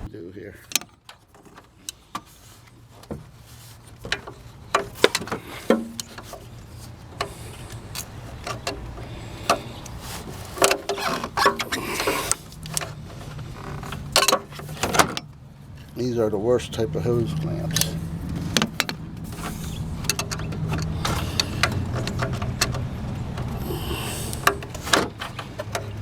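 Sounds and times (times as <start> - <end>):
hand tools on metal clamp: 3.9 - 16.0, 17.4 - 26.0.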